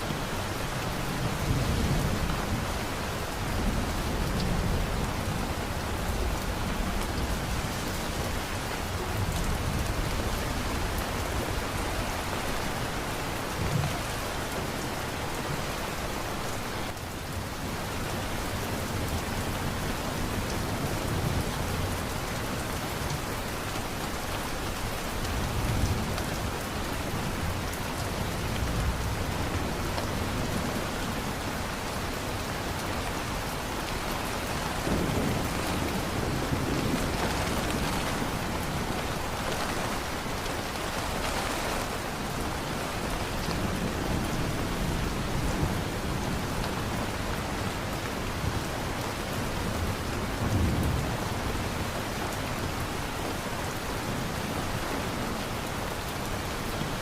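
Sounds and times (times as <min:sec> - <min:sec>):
heavy rain falling: 0:00.0 - 0:57.0
thunder rumbling: 0:33.3 - 0:46.4.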